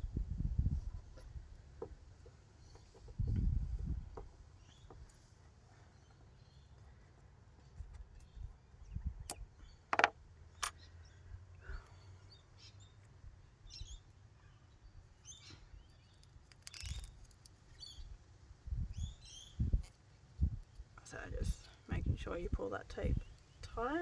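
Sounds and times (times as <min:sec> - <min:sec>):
faint bird chirps: 0:18.8 - 0:19.8.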